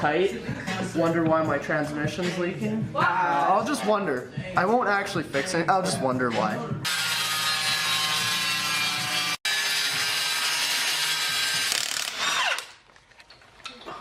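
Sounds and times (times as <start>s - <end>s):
handheld power tool whining: 6.8s - 12.9s.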